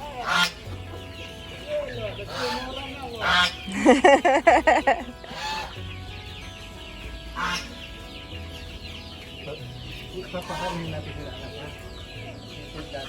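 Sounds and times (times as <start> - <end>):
duck quacking: 0.0 - 1.1, 2.2 - 4.0, 5.2 - 5.8, 7.4 - 7.9, 10.3 - 11.5
short bird calls: 0.0 - 4.0, 7.4 - 12.8
chickens clucking: 0.0 - 13.0.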